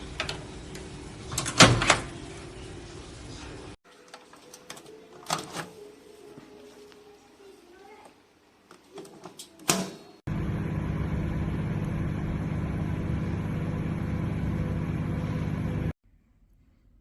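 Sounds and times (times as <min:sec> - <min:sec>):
microwave oven humming: 0:10.3 - 0:16.0.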